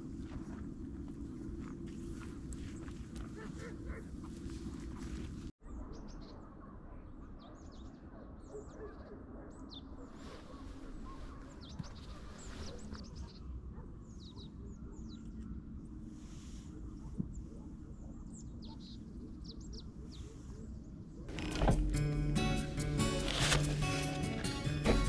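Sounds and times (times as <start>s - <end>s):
small birds chirping: 2.6s - 21.2s
brief rustling: 21.3s - 25.0s.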